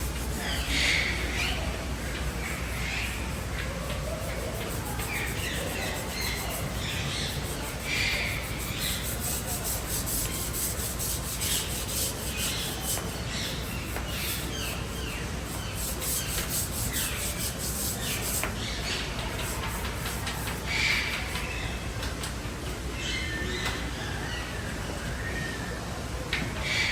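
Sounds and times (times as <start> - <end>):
scratchy rubbing noise: 0.0 - 21.4
birds chirping: 0.0 - 21.9.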